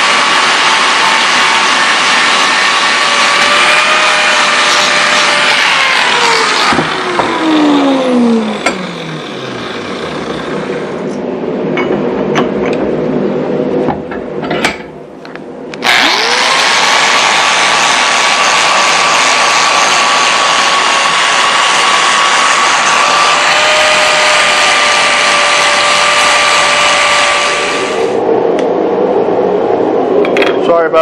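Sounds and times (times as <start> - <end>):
electric motor whining: 0.0 - 11.2, 15.8 - 28.2.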